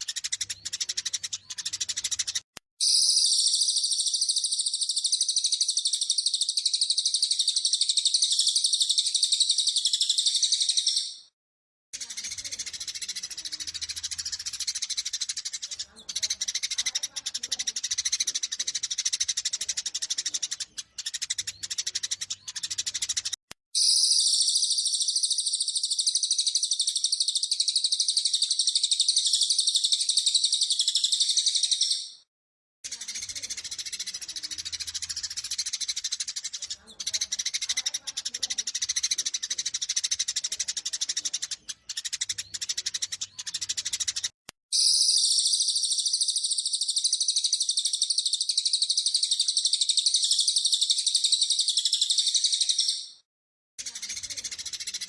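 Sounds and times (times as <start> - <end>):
sparrows chattering and chirping: 0.0 - 11.3, 12.0 - 55.0
bird's loud high trill: 2.8 - 11.3, 23.8 - 32.2, 44.7 - 53.2.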